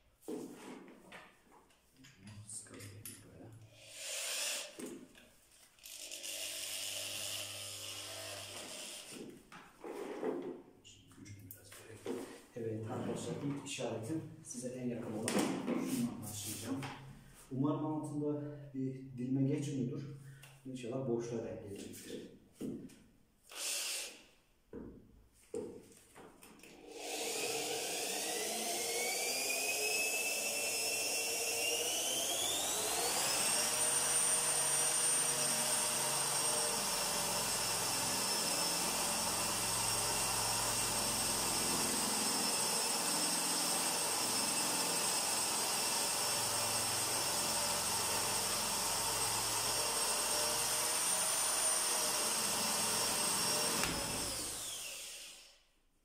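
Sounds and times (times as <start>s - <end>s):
electric drill boring into wood: 3.7s - 5.0s, 5.8s - 9.2s, 23.5s - 24.2s, 26.6s - 55.6s.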